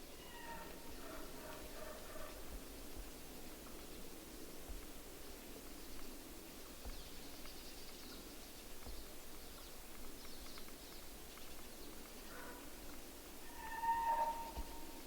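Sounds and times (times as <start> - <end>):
soft steady hiss: 0.0 - 15.0
small birds chirping: 6.9 - 12.3.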